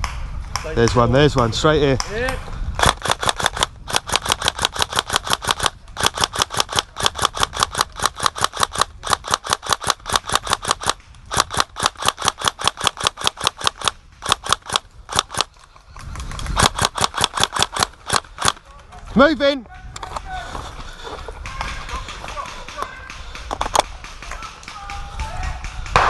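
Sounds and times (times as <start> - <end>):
airsoft gun firing full auto: 2.8 - 15.5, 16.6 - 18.6.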